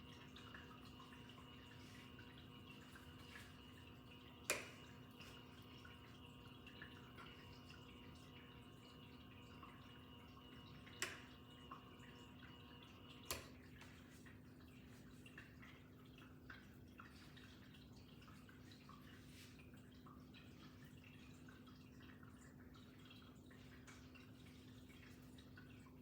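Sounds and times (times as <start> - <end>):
ceiling fan humming: 0.0 - 26.0.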